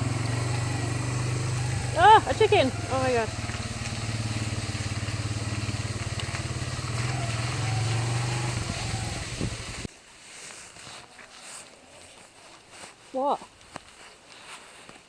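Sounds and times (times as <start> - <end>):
engine running: 0.0 - 9.9.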